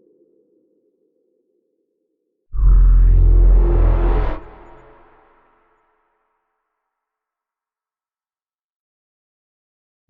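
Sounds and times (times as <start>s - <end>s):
low electronic hum: 2.6s - 5.4s.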